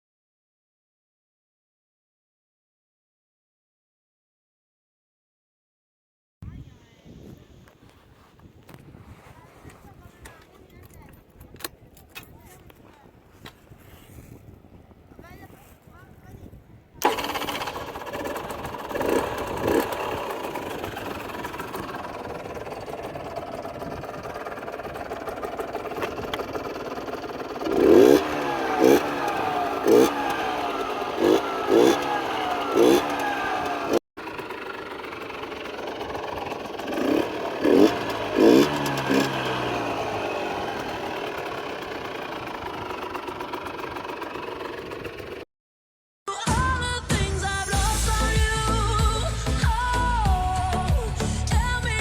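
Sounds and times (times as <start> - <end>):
engine throttle blips: 17.0 - 45.4
motorcycle engine idling: 17.0 - 45.4.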